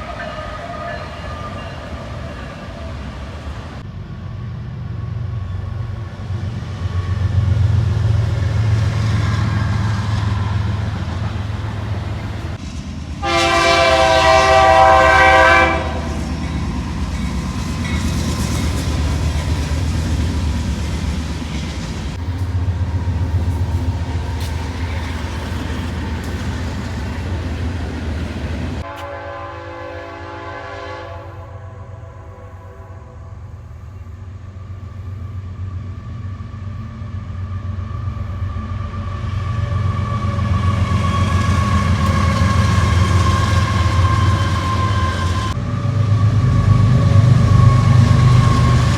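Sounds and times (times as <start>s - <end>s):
train horn blast: 0.0s - 3.0s, 13.2s - 16.4s, 28.8s - 33.7s, 39.6s - 48.9s
train rumbling past: 0.0s - 48.9s.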